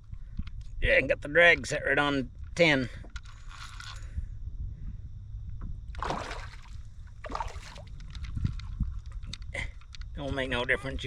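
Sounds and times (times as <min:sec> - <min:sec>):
steady low rumble: 0:03.4 - 0:11.0
water sloshing and splashing: 0:05.9 - 0:09.4.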